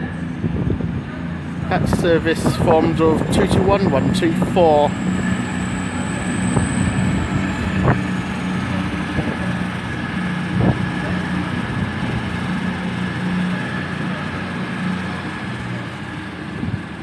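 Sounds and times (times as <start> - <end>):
high whine: 0.0 - 17.0
train diesel engines droning: 0.0 - 17.0.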